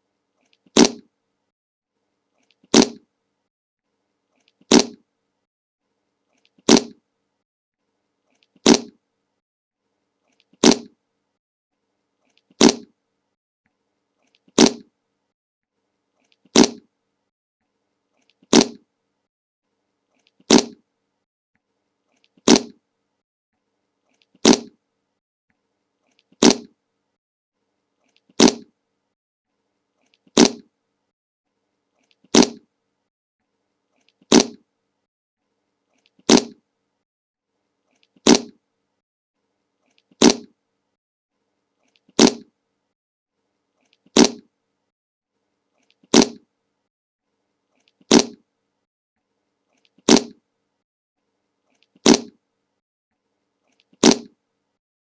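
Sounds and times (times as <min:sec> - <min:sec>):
fart sound effect: 0:00.7 - 0:01.1, 0:02.7 - 0:03.0, 0:04.7 - 0:05.0, 0:06.6 - 0:07.0, 0:08.6 - 0:09.0, 0:10.6 - 0:11.0, 0:12.5 - 0:12.9, 0:14.6 - 0:14.9, 0:16.5 - 0:16.9, 0:18.5 - 0:18.8, 0:20.5 - 0:20.8, 0:22.4 - 0:22.8, 0:24.4 - 0:24.8, 0:26.4 - 0:26.7, 0:28.4 - 0:28.7, 0:30.4 - 0:30.7, 0:32.3 - 0:32.6, 0:34.3 - 0:34.6, 0:36.3 - 0:36.6, 0:38.2 - 0:38.6, 0:40.2 - 0:40.5, 0:42.2 - 0:42.5, 0:44.2 - 0:44.5, 0:46.1 - 0:46.4, 0:48.1 - 0:48.4, 0:50.1 - 0:50.4, 0:52.0 - 0:52.3, 0:54.0 - 0:54.3.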